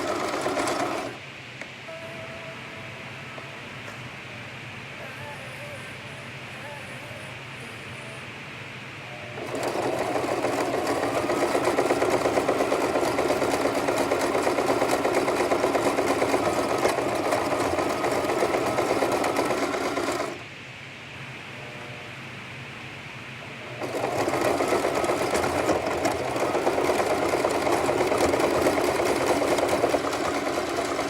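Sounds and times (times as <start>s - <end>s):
sewing machine stitching: 0.0s - 1.2s, 9.4s - 20.4s, 23.7s - 31.0s.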